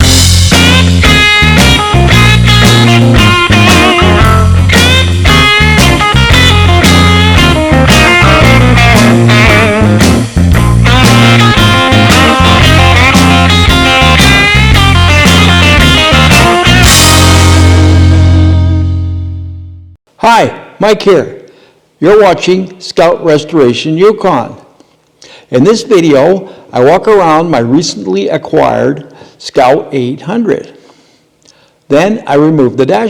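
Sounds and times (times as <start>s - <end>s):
rock music with electric guitar: 0.0s - 19.8s.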